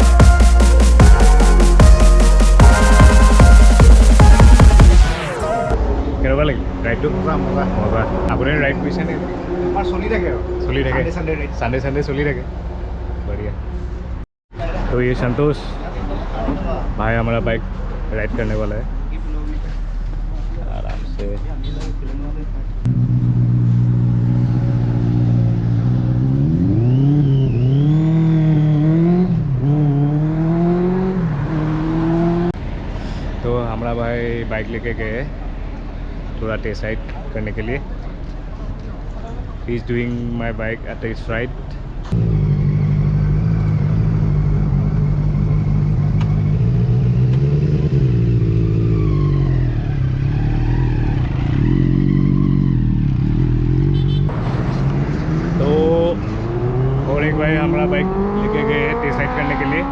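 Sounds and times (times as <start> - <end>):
motorcycle engine revving: 22.8 - 32.6, 42.1 - 59.9
motorcycle engine running: 42.2 - 48.9.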